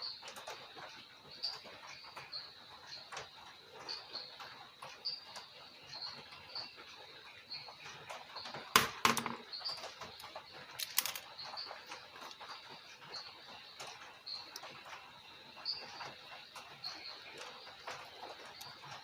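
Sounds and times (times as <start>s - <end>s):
light chirping ticks: 0.0s - 8.6s, 11.3s - 19.0s
clicks and taps of phone parts: 8.8s - 9.4s.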